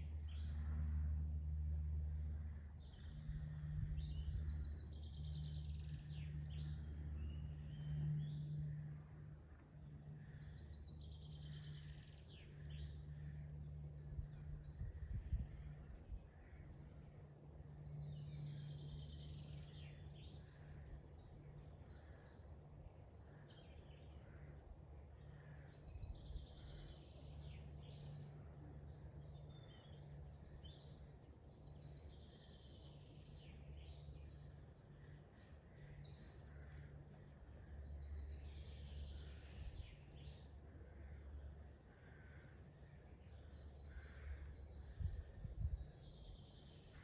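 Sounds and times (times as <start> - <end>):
low steady rumble: 0.0 - 47.0
birds chirping: 25.2 - 47.0
bird singing bright song: 25.5 - 41.2.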